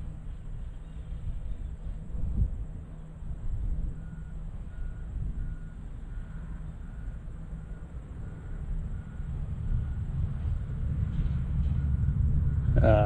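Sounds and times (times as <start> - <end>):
steady low rumble: 0.0 - 13.0
vehicle backup alarm beeping: 2.6 - 13.0.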